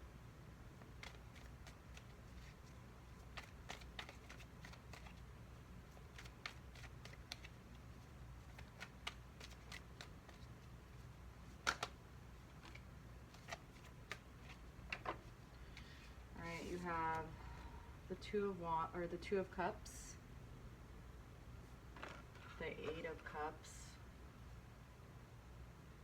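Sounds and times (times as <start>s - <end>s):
cards shuffling with snaps: 0.8s - 10.7s, 11.4s - 16.0s.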